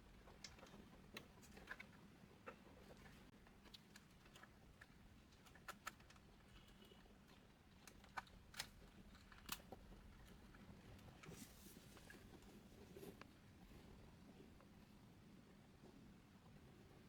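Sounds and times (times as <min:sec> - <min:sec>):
small clicks and taps: 0:00.3 - 0:11.3.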